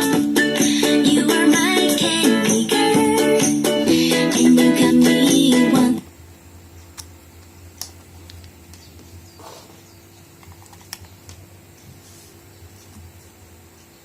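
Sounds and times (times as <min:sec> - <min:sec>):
steady low hum: 0:00.0 - 0:14.0
soft rustle: 0:11.8 - 0:13.4.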